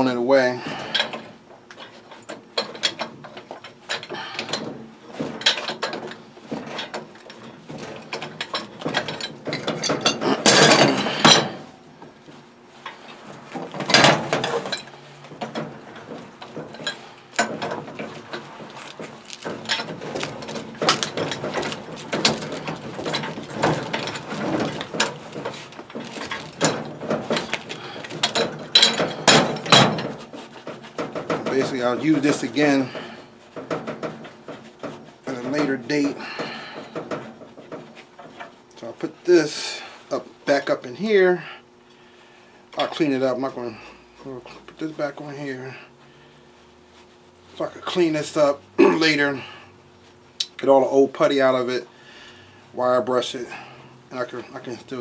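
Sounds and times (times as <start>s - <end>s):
metal tools clanking on pipe: 0.4s - 11.7s, 12.8s - 38.9s.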